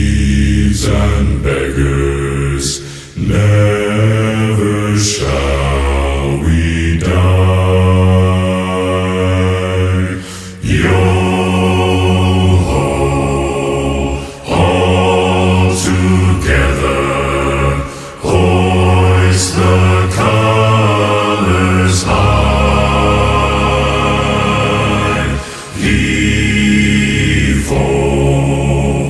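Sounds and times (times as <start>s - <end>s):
voices singing a sea shanty: 0.0s - 29.0s.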